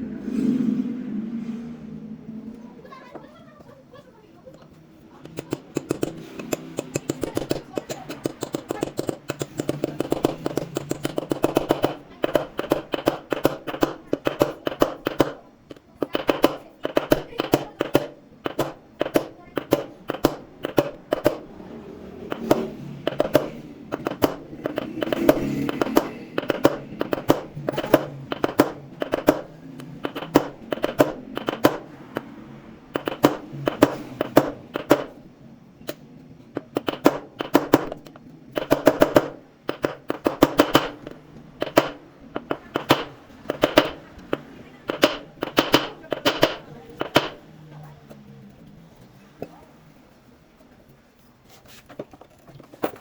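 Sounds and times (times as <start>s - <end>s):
hand tools knocking on metal: 4.5s - 21.6s, 22.2s - 35.2s, 36.5s - 47.4s.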